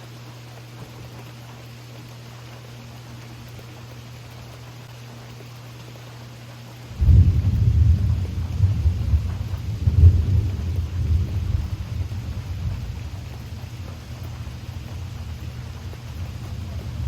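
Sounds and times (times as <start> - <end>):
steady rain: 0.0 - 17.0
thunder rumbling: 7.0 - 17.0.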